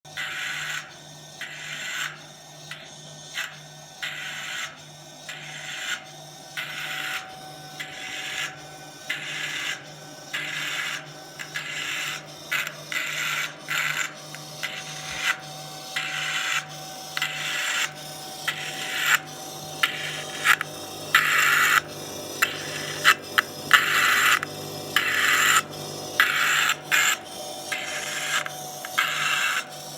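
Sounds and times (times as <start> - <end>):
machine low hum: 7.5 - 29.9.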